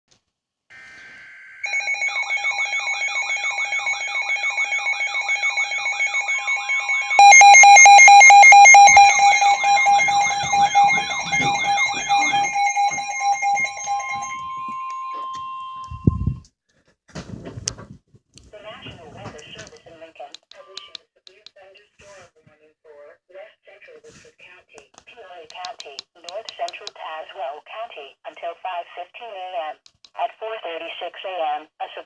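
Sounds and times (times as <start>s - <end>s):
steady warning tone: 0.7s - 16.1s
warbling alarm: 0.7s - 16.2s
loud rapid beeping: 3.4s - 14.8s.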